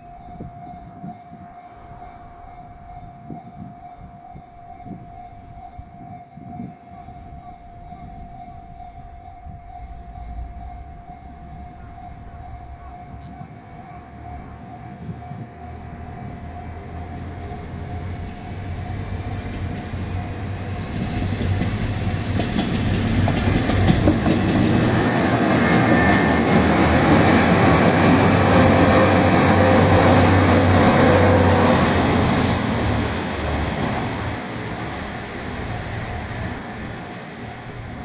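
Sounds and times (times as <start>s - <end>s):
level crossing warning tone: 0.0s - 21.1s, 25.1s - 32.7s
train diesel engines running: 0.0s - 38.0s
wheels clicking over rail joints: 16.0s - 31.4s.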